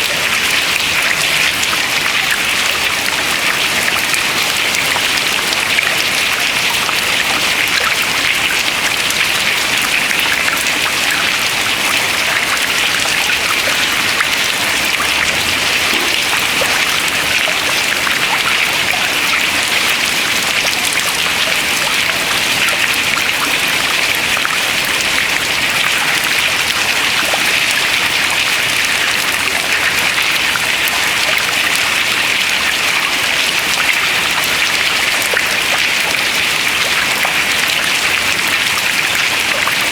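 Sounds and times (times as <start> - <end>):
water dripping from melting ice: 0.0 - 39.9.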